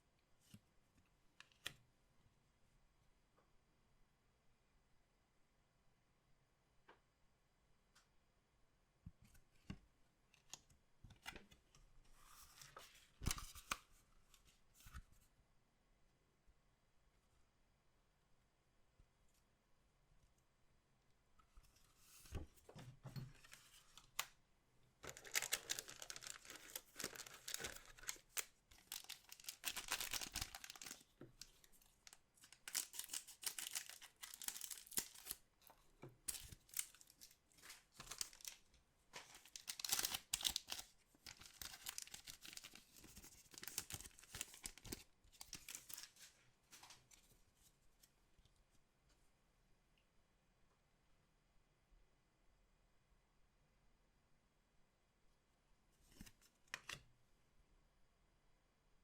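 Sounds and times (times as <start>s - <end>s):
card pack wrappers tearing: 25.0s - 31.1s, 32.0s - 35.4s, 36.3s - 38.6s, 39.4s - 46.1s.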